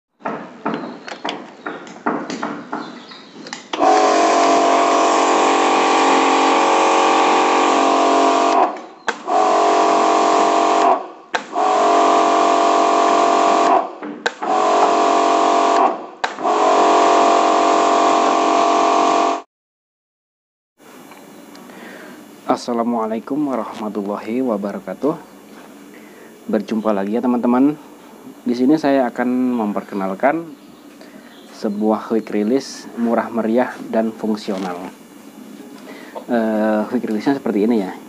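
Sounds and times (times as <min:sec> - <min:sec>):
pressure washer motor and pump: 0:03.7 - 0:19.4.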